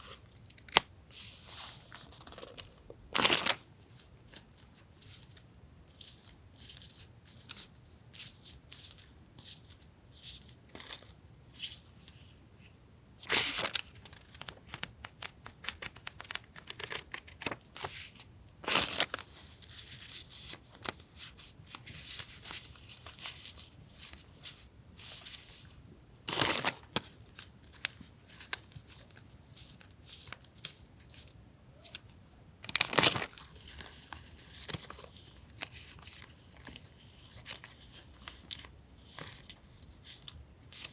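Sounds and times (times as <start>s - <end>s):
paper rustling: 13.3s - 25.6s, 32.7s - 40.9s.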